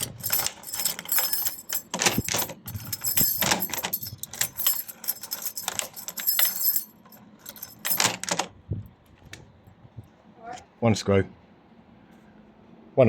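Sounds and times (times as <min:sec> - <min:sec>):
keys jangling: 0:00.0 - 0:08.5.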